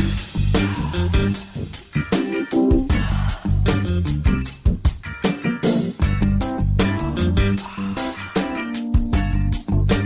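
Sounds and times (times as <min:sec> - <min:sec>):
funk music with guitar and drums: 0:00.0 - 0:10.0.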